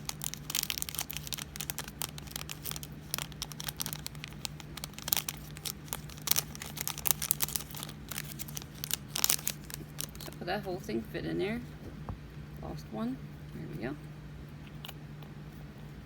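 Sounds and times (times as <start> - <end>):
plastic bags crinkling: 0.0 - 10.8.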